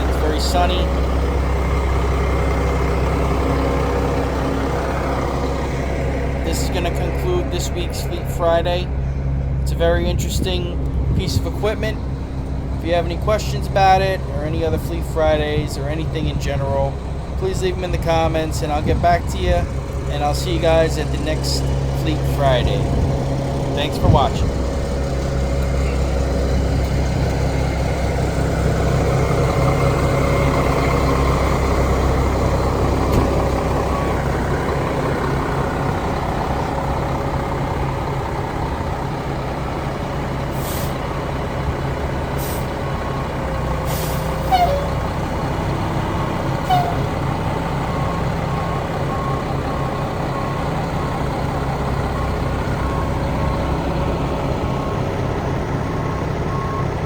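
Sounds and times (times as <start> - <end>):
diesel truck engine idling: 0.0 - 57.0
reversing alarm beeping: 28.7 - 36.8, 42.6 - 45.2, 45.9 - 57.0
short sharp hisses: 40.6 - 41.0, 43.9 - 44.3.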